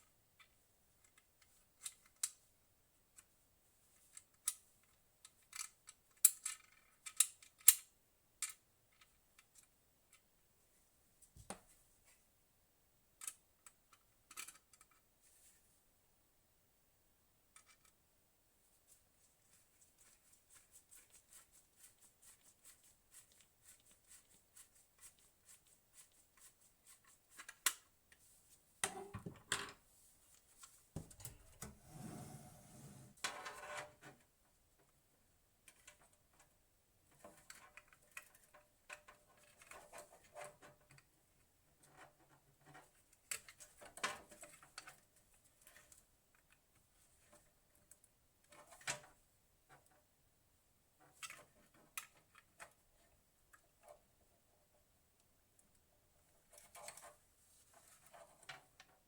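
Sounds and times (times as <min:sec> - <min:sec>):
rubbing and scraping: 0:31.0 - 0:33.2.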